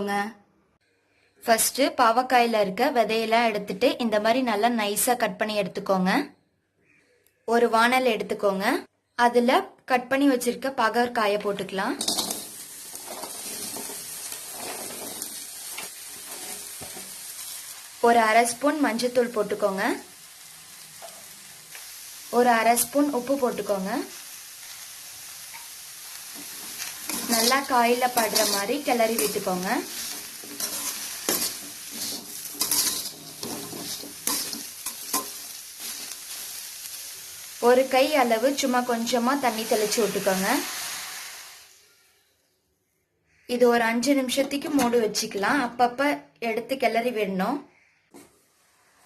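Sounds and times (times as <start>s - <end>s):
vegetables sizzling in a pan: 10.4s - 42.3s
spoon scraping metal pan: 12.0s - 17.3s, 26.4s - 36.4s.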